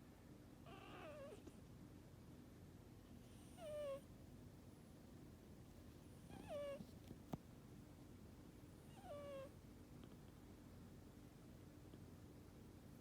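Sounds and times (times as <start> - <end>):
cat snoring: 3.2 - 4.0, 8.9 - 9.5.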